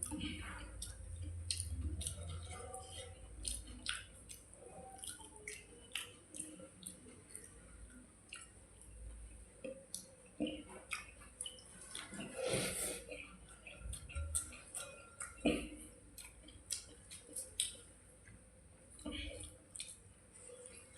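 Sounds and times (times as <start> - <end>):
wet eating sounds: 0.0 - 20.9.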